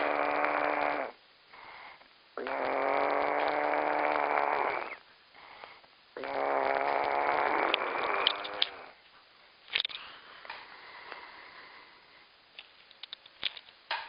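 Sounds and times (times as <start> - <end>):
man snoring loudly: 0.0 - 1.2, 2.4 - 5.0, 6.2 - 9.0
quiet breaths: 0.0 - 13.2.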